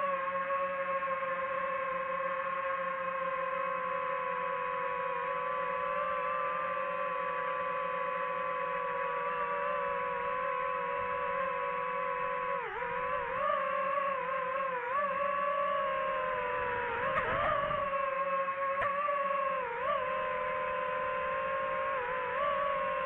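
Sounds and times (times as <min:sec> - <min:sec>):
drone propellers whining: 0:00.0 - 0:23.0.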